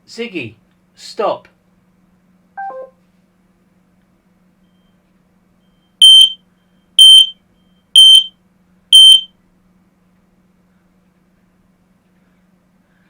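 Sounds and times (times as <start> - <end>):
smoke alarm beeps: 5.7 - 6.4, 7.0 - 8.3, 8.9 - 9.3.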